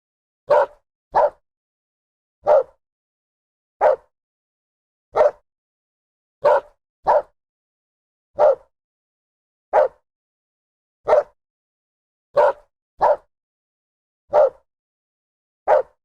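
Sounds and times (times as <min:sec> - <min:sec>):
dog barking: 0:00.5 - 0:01.4, 0:02.4 - 0:02.8, 0:03.8 - 0:04.1, 0:05.1 - 0:05.4, 0:06.4 - 0:07.4, 0:08.4 - 0:08.7, 0:09.7 - 0:10.0, 0:11.0 - 0:11.4, 0:12.4 - 0:13.3, 0:14.3 - 0:14.7, 0:15.7 - 0:16.0.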